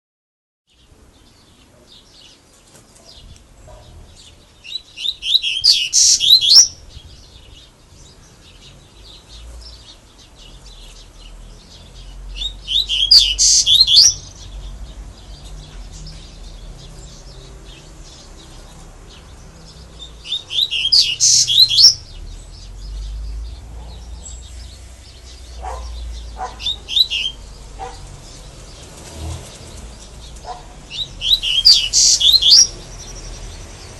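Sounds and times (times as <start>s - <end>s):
songbird singing rapid high notes: 4.6s - 28.9s, 29.6s - 33.9s
soft bird twitters: 19.9s - 33.5s.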